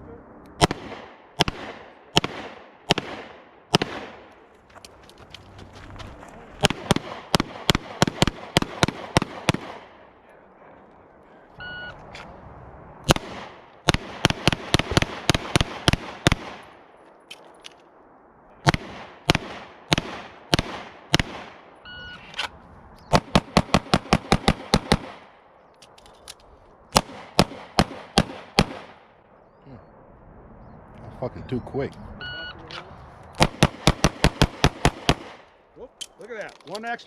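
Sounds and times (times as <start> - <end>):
gunshots: 0.6 - 4.3, 6.4 - 10.2, 13.0 - 16.9, 18.6 - 21.8, 23.1 - 25.4, 26.9 - 29.2, 33.4 - 35.6.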